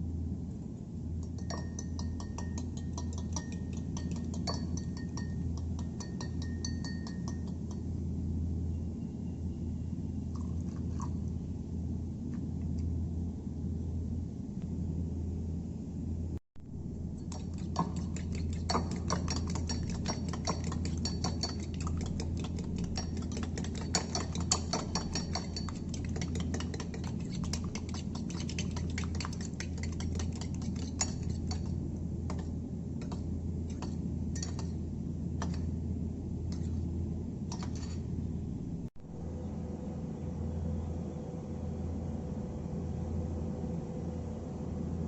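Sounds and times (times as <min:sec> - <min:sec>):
steady low hum: 0:00.0 - 0:45.0
utensil clicking against bowl: 0:01.2 - 0:07.8, 0:17.2 - 0:34.8.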